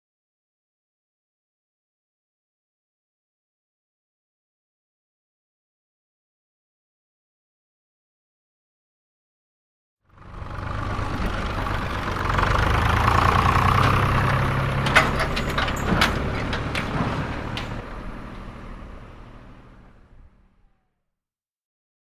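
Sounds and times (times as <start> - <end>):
tractor engine idling: 10.2 - 20.6
sharp clicks or clanks: 13.2 - 18.6.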